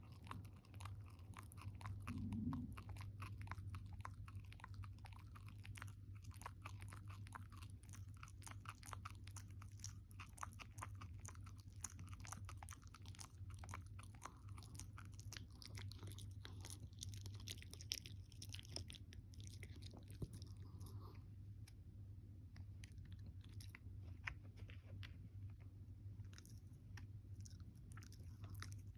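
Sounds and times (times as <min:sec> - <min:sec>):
dog chewing crunches: 0:00.0 - 0:20.9
low hum: 0:01.2 - 0:03.6.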